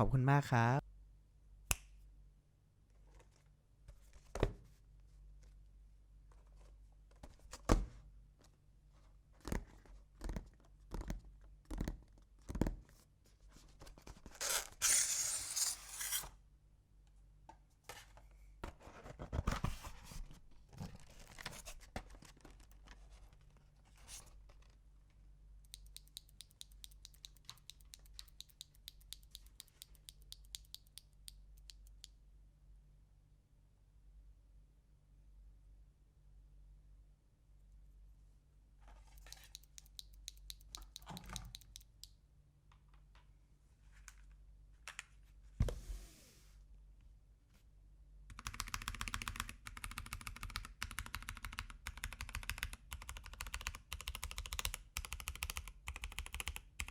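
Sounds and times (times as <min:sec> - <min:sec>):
fast fine ticks: 0:25.7 - 0:32.1.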